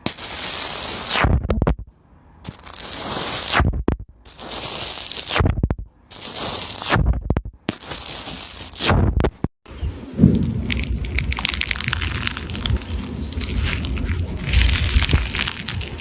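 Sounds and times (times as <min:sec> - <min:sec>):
slime squelching by hand: 0:10.3 - 0:16.0.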